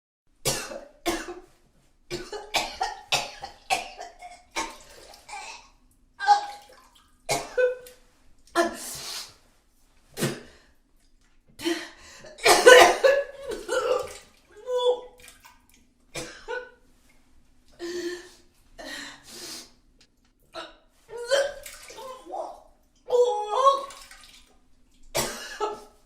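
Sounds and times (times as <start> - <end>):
woman retching and vomiting: 2.1 - 6.7, 7.3 - 7.9, 12.3 - 14.3, 25.2 - 26.0.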